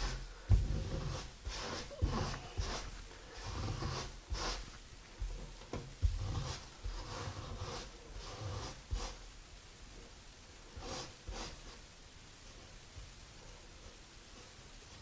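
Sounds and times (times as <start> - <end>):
putty knife scraping tile: 0.0 - 9.2.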